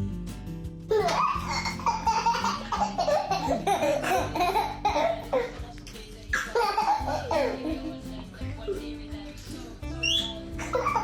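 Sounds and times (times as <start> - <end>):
background music: 0.0 - 11.0
small child laughing: 0.9 - 5.6, 6.4 - 8.0, 10.0 - 11.0.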